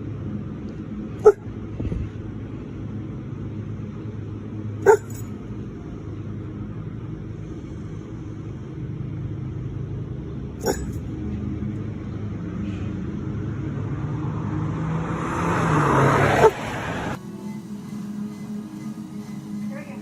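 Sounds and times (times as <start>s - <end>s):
dog barking: 1.2s - 1.5s, 4.8s - 5.2s, 10.6s - 11.0s, 16.3s - 16.6s.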